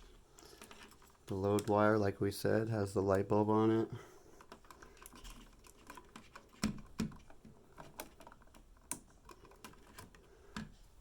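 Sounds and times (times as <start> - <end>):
plastic wire connectors clicking: 0.4 - 1.8, 4.4 - 11.0
clicks and taps of electrical wires: 0.4 - 2.1, 4.4 - 11.0.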